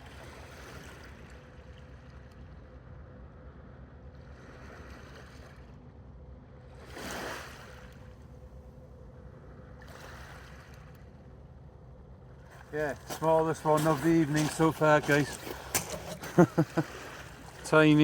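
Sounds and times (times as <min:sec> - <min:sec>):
steady low rumble: 0:07.8 - 0:18.0
sea water washing against dock: 0:12.4 - 0:18.0.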